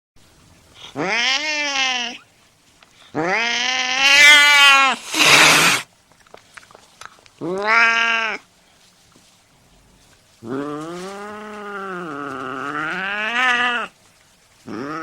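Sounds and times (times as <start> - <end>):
cat yowling: 1.0 - 2.2, 3.2 - 5.8
cat hissing: 3.2 - 5.9.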